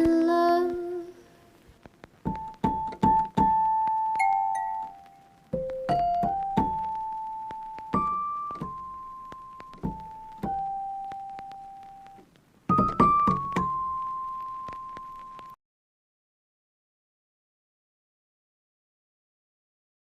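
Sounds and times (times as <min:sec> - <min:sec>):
slow piano melody: 0:02.3 - 0:15.6.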